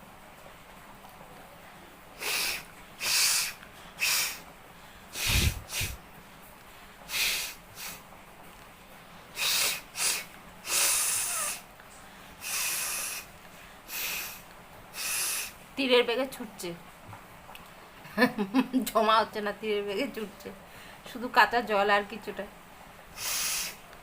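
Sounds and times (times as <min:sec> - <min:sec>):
person blowing their nose: 0:02.2 - 0:04.4, 0:05.2 - 0:06.0, 0:07.1 - 0:08.0, 0:09.4 - 0:11.7, 0:12.4 - 0:13.3, 0:13.9 - 0:14.4, 0:15.0 - 0:15.6, 0:23.2 - 0:23.8.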